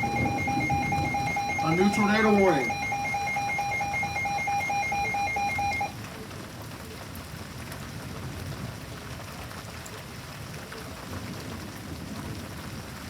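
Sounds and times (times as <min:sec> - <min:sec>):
rapid pulsed alert beeping: 0:00.0 - 0:05.9
steady rain: 0:00.0 - 0:13.0.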